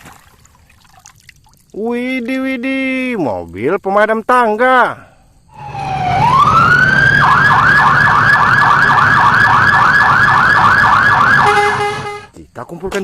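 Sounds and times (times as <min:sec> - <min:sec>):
fire engine siren: 0:05.5 - 0:12.3.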